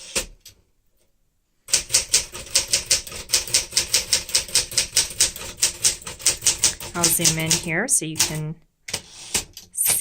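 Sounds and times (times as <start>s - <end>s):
manual typewriter key strikes: 1.8s - 8.4s.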